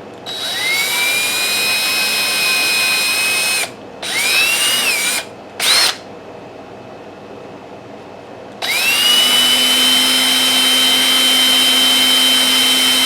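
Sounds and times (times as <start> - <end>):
electric drill boring wood: 0.3 - 6.0, 8.6 - 13.0.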